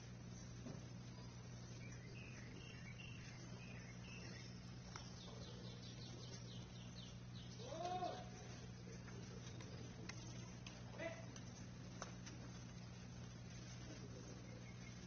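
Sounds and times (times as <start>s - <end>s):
steady low hum: 0.0s - 15.0s
faint bird chirps: 0.3s - 10.6s, 13.5s - 15.0s.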